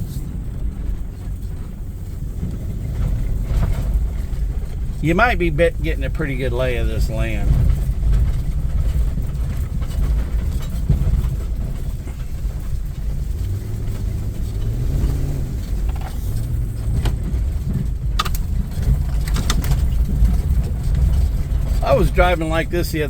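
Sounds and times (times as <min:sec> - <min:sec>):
vehicle driving low rumble: 0:00.0 - 0:23.0.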